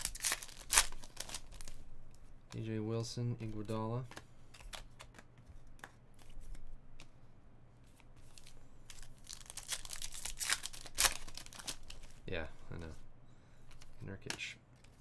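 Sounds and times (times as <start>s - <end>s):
wrappers tearing and crinkling: 0.0s - 1.7s, 8.3s - 12.1s
cards being handled: 0.0s - 7.2s, 7.8s - 13.0s, 13.6s - 15.0s.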